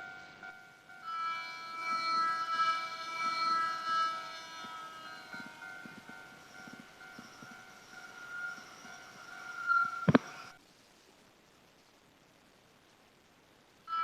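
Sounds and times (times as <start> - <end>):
level crossing alarm ringing: 0.0 - 10.6.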